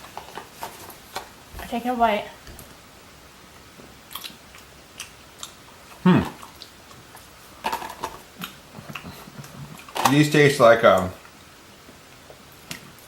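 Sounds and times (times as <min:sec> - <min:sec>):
person chewing candy: 0:04.1 - 0:10.2
short vocal sound: 0:06.0 - 0:06.4.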